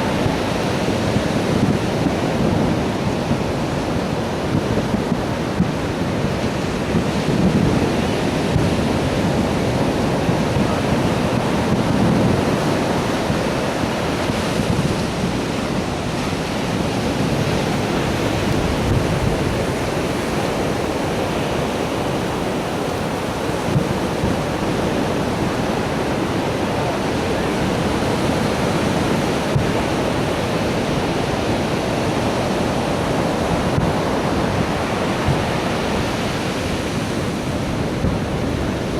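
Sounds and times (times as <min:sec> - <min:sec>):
surf rushing: 0:00.0 - 0:38.9
wind buffeting microphone: 0:00.0 - 0:38.9.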